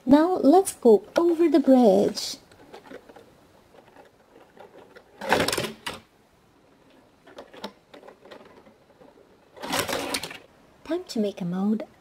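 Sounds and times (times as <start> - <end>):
plastic toy pieces scraping rattle: 2.5 - 5.8, 6.9 - 10.5.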